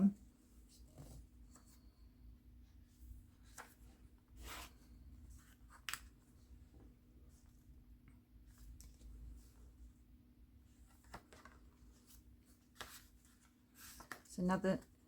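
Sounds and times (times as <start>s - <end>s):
paper pages rustling: 3.2s - 6.5s, 10.7s - 14.3s.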